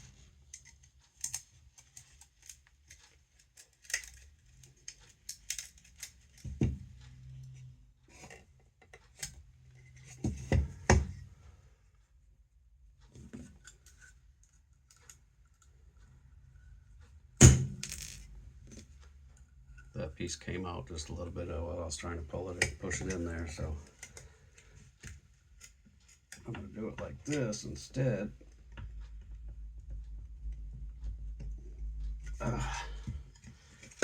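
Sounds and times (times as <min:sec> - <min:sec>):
rivet tool clicks and clacks: 0:00.4 - 0:06.6.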